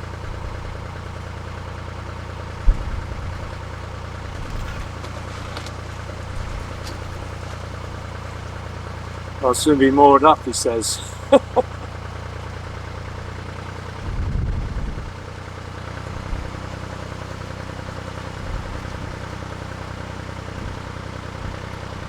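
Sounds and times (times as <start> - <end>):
diesel engine running: 0.0 - 22.0
wind buffeting microphone: 2.6 - 4.9, 13.9 - 15.5, 16.1 - 16.7, 18.4 - 19.2.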